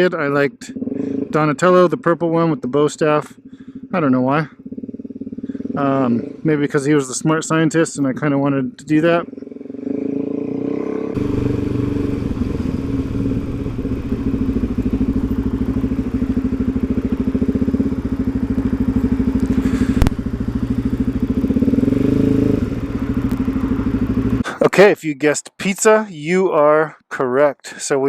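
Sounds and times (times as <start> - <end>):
motorcycle engine running: 4.5 - 6.1, 11.2 - 24.4.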